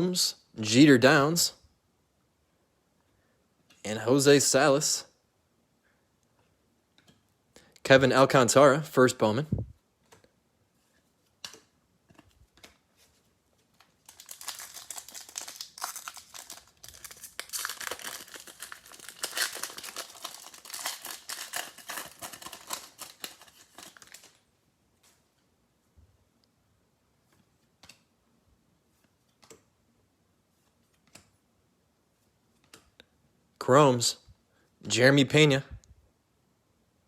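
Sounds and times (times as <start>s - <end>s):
card pack wrapper tearing and crinkling: 13.8s - 24.5s.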